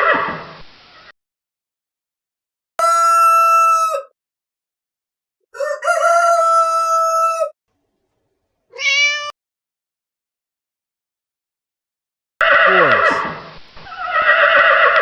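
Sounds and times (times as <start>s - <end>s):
rooster crowing: 2.8s - 4.1s, 5.5s - 7.6s, 13.9s - 15.0s.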